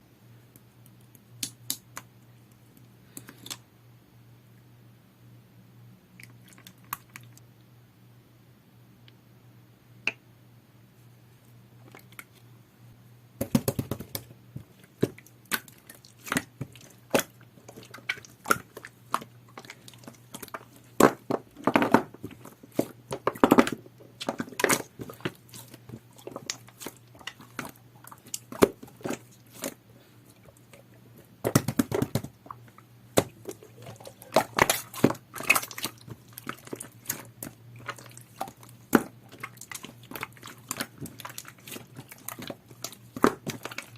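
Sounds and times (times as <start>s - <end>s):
slime clicking and squishing: 13.4s - 43.9s.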